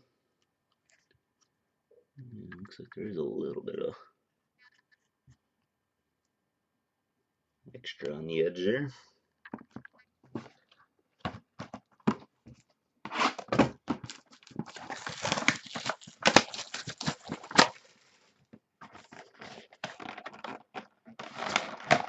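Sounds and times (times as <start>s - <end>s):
packaging crinkling and tearing: 14.0s - 18.3s, 19.0s - 22.0s.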